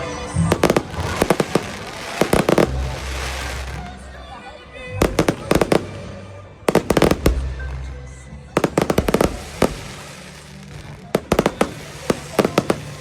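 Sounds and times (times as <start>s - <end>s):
fireworks exploding: 0.0s - 4.2s, 5.0s - 7.9s, 8.6s - 13.0s
music playing: 0.0s - 13.0s.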